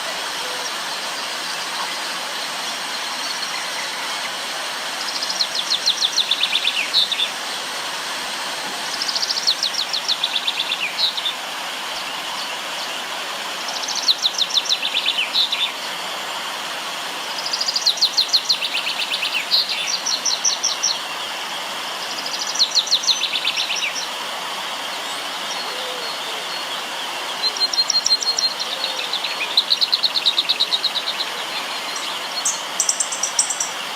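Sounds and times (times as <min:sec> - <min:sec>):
river water rushing: 0:00.1 - 0:33.9
songbird high notes: 0:30.7 - 0:33.9.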